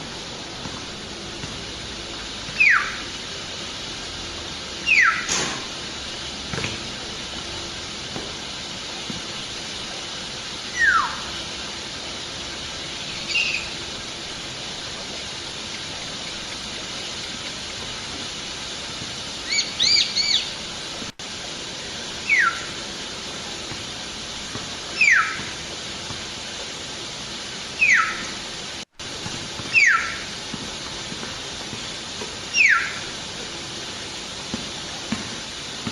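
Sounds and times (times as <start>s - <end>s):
background hiss: 0.0s - 35.9s.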